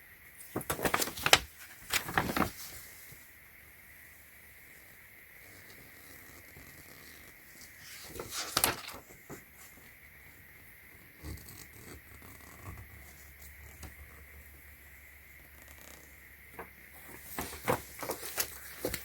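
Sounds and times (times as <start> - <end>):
rustling and clicks of unpacking: 0.5 - 2.7, 16.6 - 19.0.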